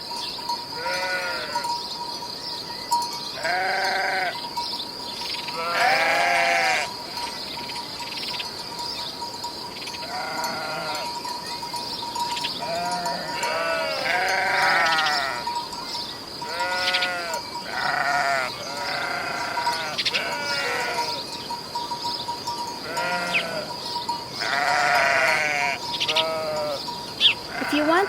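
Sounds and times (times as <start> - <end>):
sheep or goats bleating: 0.8 - 1.6, 3.4 - 4.4, 5.5 - 6.9, 10.0 - 11.1, 12.6 - 15.4, 16.4 - 21.2, 22.8 - 23.8, 24.4 - 26.8, 27.5 - 28.0.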